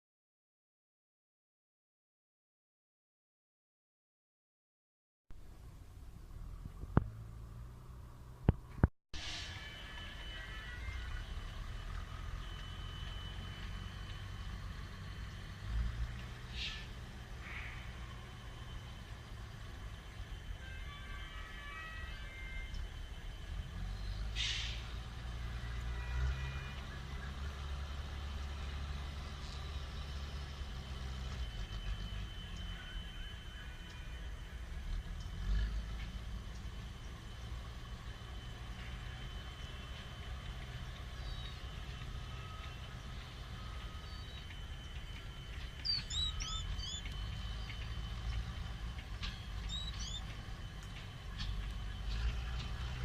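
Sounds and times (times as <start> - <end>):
diesel locomotive rumble: 5.4 - 53.0
small bird chirping: 45.8 - 48.4, 49.2 - 50.3.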